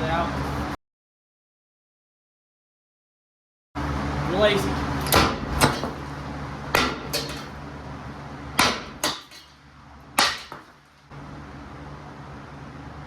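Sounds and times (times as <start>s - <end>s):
steady low hum: 3.8s - 13.0s
hammer striking metal: 5.0s - 6.0s, 6.7s - 7.6s, 8.6s - 9.6s, 10.2s - 10.7s.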